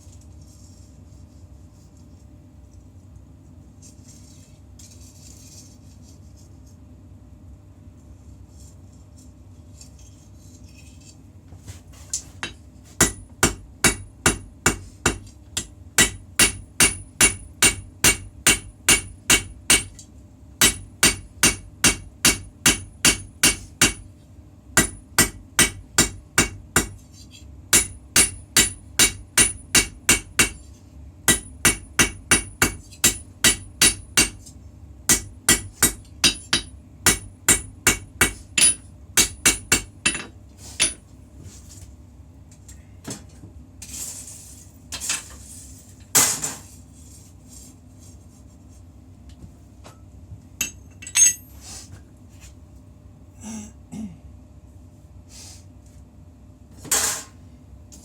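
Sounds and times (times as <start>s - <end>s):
hammer striking blade on anvil: 12.4s - 20.0s, 20.6s - 24.0s, 24.8s - 27.0s, 27.7s - 30.7s, 31.3s - 34.4s, 35.1s - 41.0s.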